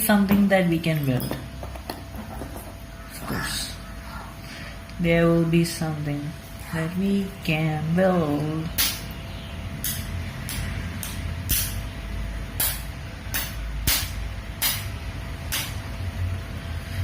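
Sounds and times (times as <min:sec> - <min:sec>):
electric sparks snapping: 0:08.8 - 0:09.1, 0:09.8 - 0:11.8, 0:12.5 - 0:15.9.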